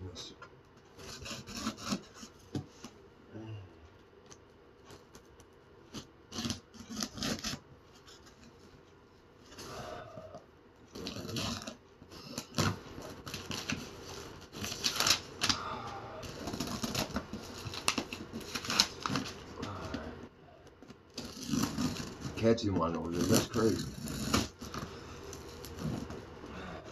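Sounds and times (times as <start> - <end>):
cardboard scraping and tearing: 1.0 - 2.4, 5.9 - 8.5, 10.9 - 15.5, 16.2 - 19.5, 21.1 - 26.2
cardboard and paper rustling: 16.2 - 20.1, 21.2 - 26.1.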